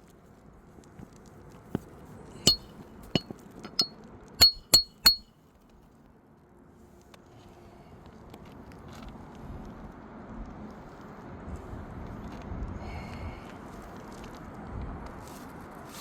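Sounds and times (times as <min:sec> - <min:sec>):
hammer striking metal: 0:02.5 - 0:05.2.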